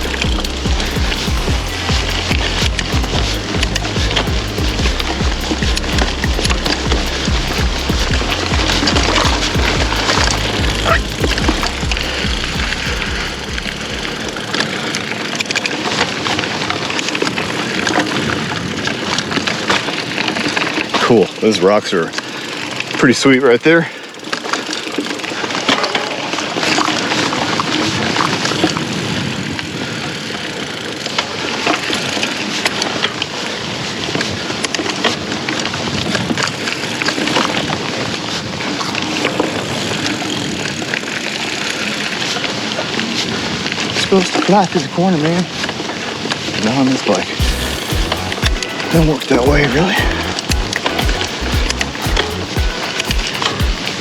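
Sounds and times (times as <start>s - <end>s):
wind noise on microphone: 0.0s - 15.1s, 47.4s - 54.0s
bike clicking and rattling: 0.0s - 15.8s
bicycle tyre and trail noise: 0.0s - 54.0s.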